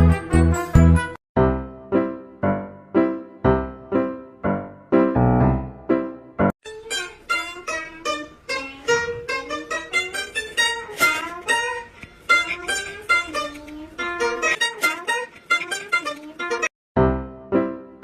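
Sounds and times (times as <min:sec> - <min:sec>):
plucked string music: 0:06.7 - 0:16.7.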